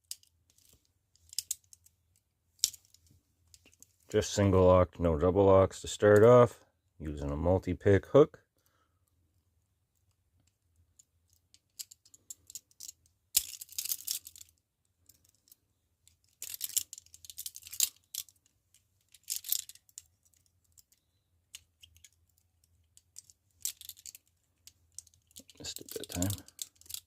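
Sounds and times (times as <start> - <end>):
handcuffs clicking and rattling: 0.0 - 1.9, 2.6 - 3.8, 10.0 - 27.0.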